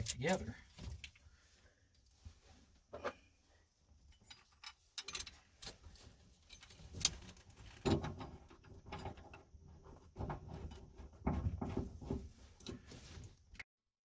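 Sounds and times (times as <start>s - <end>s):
clicks and rattles of parts: 4.1s - 12.9s.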